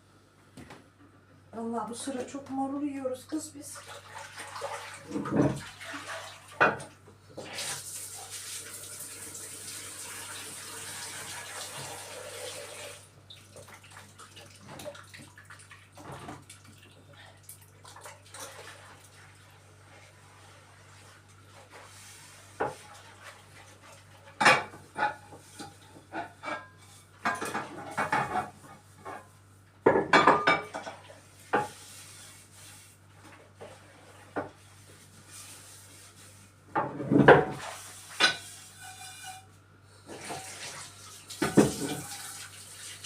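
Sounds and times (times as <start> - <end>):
dishes and cutlery clattering: 24.3 - 29.2, 29.9 - 31.0, 38.2 - 39.5, 41.4 - 42.4.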